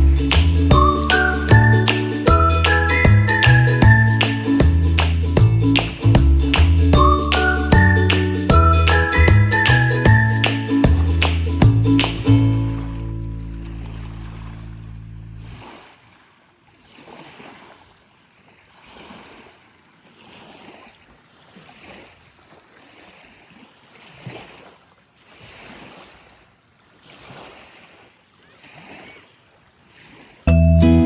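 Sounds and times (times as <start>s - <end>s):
small waves washing onto beach: 9.6s - 30.5s.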